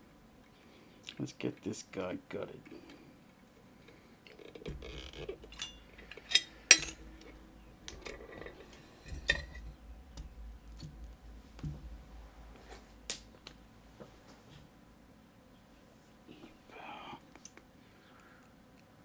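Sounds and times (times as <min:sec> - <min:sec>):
rubbing handling noise: 0:03.6 - 0:14.9
metal lock parts clinking: 0:03.9 - 0:11.8.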